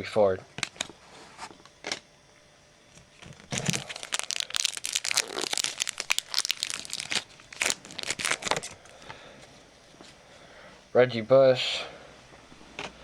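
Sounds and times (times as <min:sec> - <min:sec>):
foil wrapper crinkling: 0:03.2 - 0:09.0.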